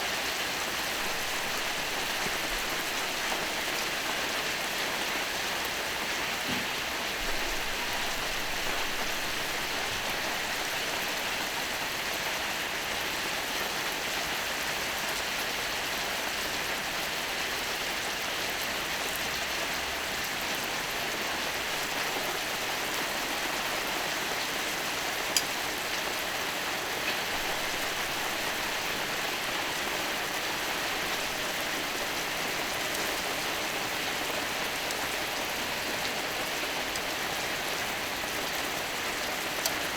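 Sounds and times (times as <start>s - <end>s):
steak sizzling on a griddle: 1.0s - 4.6s, 21.7s - 34.6s.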